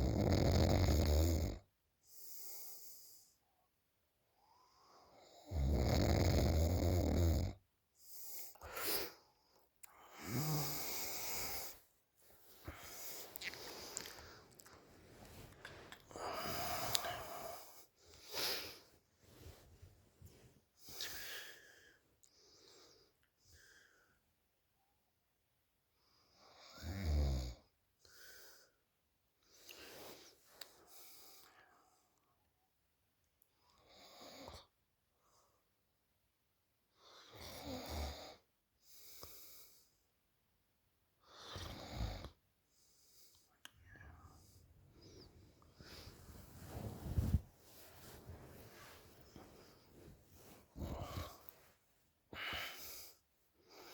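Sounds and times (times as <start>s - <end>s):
woman snoring: 0.0s - 1.6s, 5.4s - 7.6s, 10.1s - 11.7s, 16.1s - 17.7s, 50.8s - 51.5s
soft breath out: 8.1s - 24.2s, 43.1s - 53.9s.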